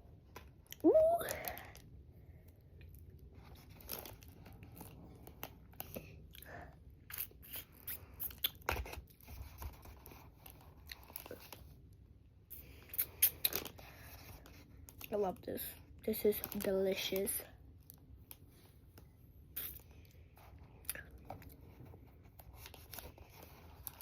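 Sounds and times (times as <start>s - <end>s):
wet chewing clicks and smacks: 7.1s - 8.7s, 12.9s - 13.7s.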